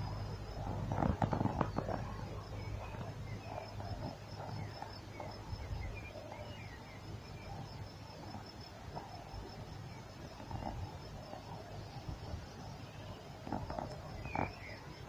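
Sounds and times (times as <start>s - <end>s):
low steady rumble: 0.0s - 14.8s
high insect trill: 0.0s - 15.0s.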